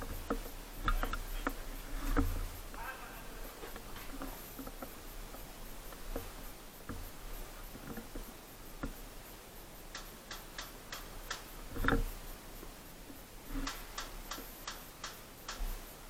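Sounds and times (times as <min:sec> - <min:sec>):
sharp clicks: 0:09.9 - 0:12.1, 0:13.4 - 0:15.8.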